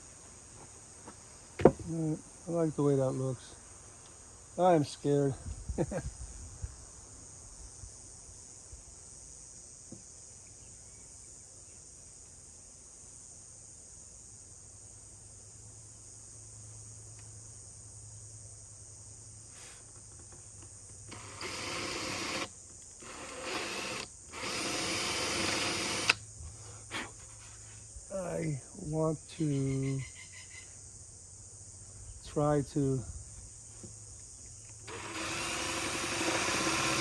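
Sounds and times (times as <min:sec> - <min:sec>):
power drill drilling wood: 0:21.1 - 0:26.2, 0:34.8 - 0:37.0.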